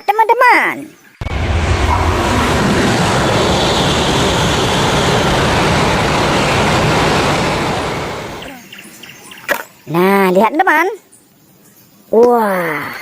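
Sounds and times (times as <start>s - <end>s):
low rumble: 1.2s - 8.5s
train rushing past: 1.2s - 8.5s.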